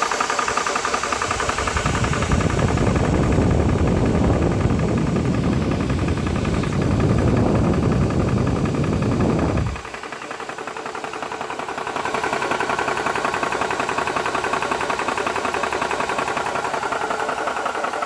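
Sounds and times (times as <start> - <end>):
air compressor pulsing: 0.0 - 18.0
deep low rumble: 1.6 - 9.9.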